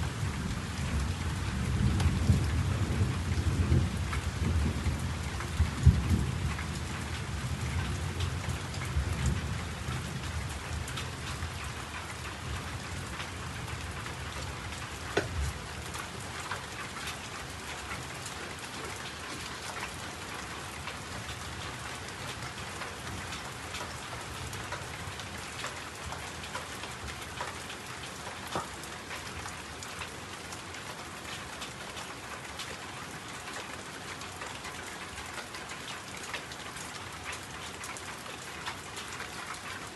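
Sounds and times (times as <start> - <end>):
low rumble of thunder: 0.0 - 19.1
steady rain falling: 0.0 - 39.9.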